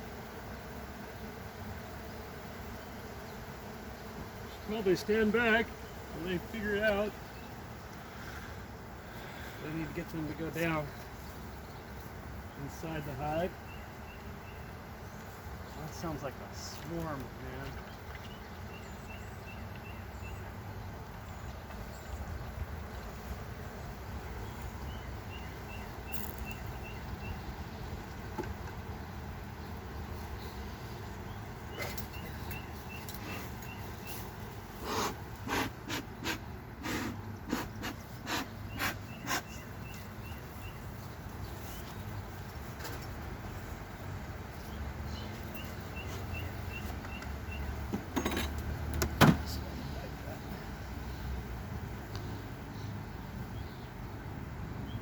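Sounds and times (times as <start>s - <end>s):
bees humming: 0.0s - 55.0s
hive boxes knocking and scraping: 45.2s - 49.6s.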